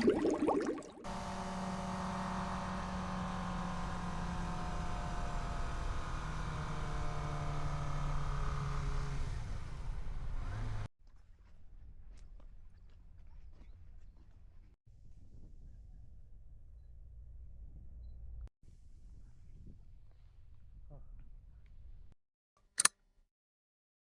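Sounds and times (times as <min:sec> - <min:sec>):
motorcycle engine running: 0:01.1 - 0:10.9.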